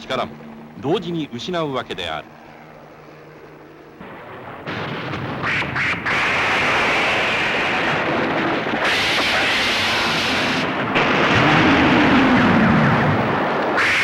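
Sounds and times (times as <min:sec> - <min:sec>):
heavy rain pouring: 0:05.4 - 0:14.0.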